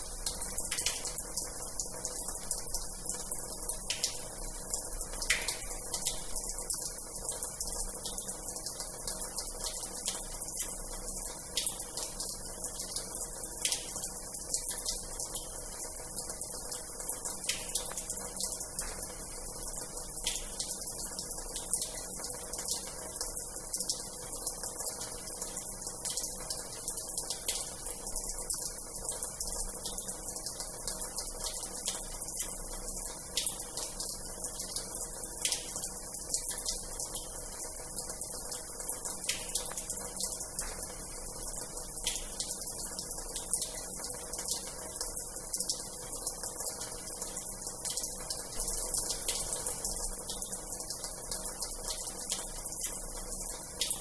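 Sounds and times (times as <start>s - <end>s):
tap water splashing into basin: 5.1s - 6.5s.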